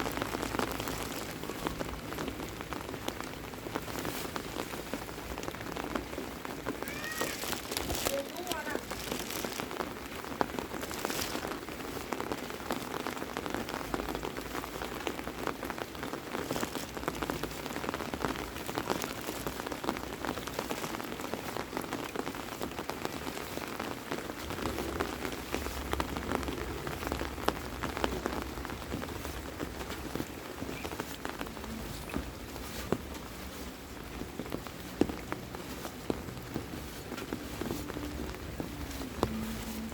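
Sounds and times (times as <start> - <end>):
heavy rain falling: 0.0 - 39.9
low rumble: 24.4 - 39.9.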